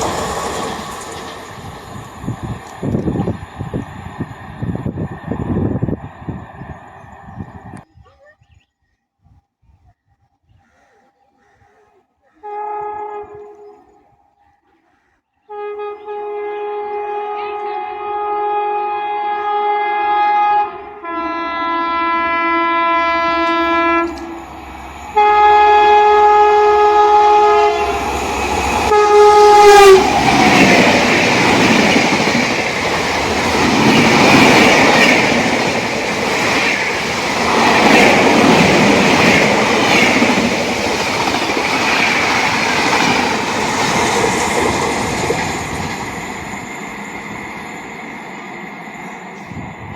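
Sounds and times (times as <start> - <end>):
train coaches rushing and clattering: 0.0 - 7.8, 22.8 - 49.9
train air horn blasts: 12.4 - 14.0, 15.5 - 31.3.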